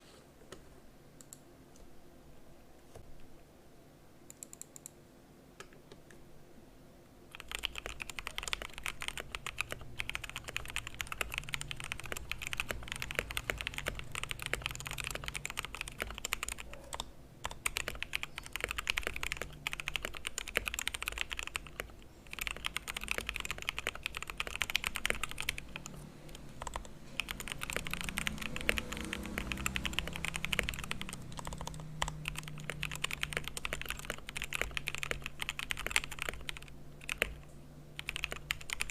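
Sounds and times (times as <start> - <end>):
typing on mechanical keyboard: 7.3 - 37.4, 38.0 - 38.9.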